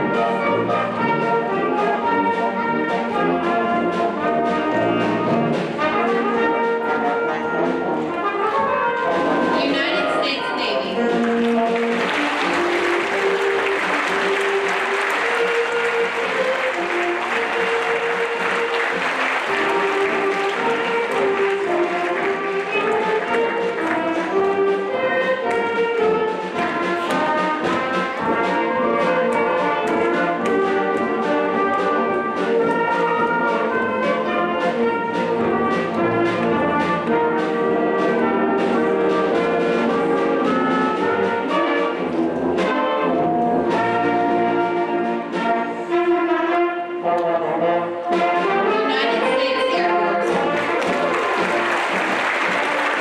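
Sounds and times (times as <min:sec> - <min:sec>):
brass band playing melody: 0:00.0 - 0:53.0
applause: 0:10.9 - 0:24.6, 0:50.3 - 0:53.0.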